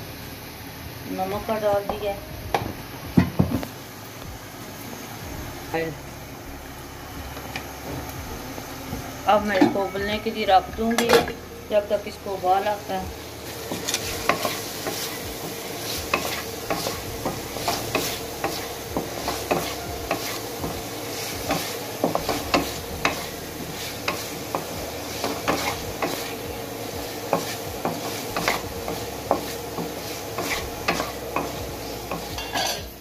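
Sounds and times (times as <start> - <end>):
chicken sizzling in oil: 7.2 - 33.0
spoon scraping a pan: 13.6 - 26.4, 27.3 - 32.9.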